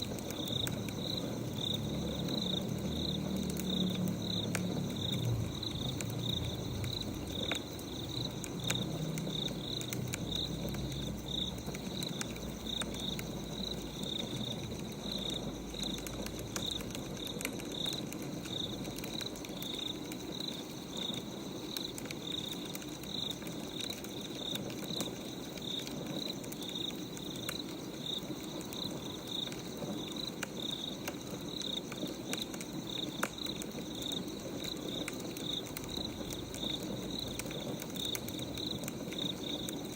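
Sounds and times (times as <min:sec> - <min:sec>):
crickets chirping: 0:00.0 - 0:39.9
wood fire crackling and popping: 0:00.0 - 0:39.9.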